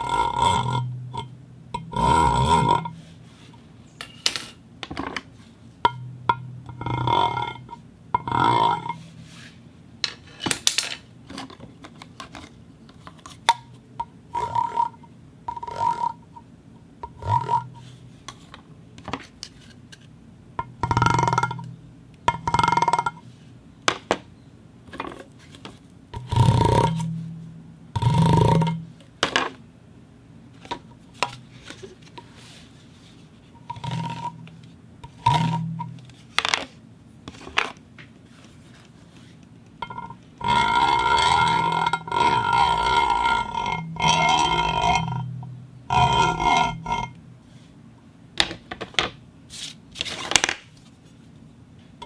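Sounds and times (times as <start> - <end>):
corrugated pipe scraping metal plate: 0.0 - 3.6, 5.9 - 9.6, 14.3 - 16.4, 17.0 - 18.0, 20.6 - 23.2, 26.2 - 29.0, 33.4 - 36.3, 39.8 - 47.4.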